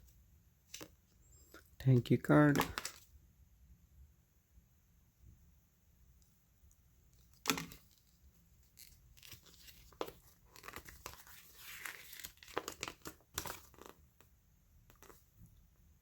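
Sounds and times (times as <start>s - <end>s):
packaging rustling and crinkling: 7.3s - 14.0s
packaging ripping: 8.7s - 14.0s.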